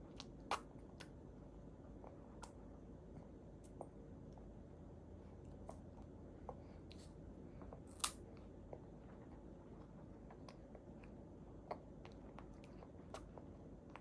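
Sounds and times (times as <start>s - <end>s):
baby chewing: 10.2s - 14.0s.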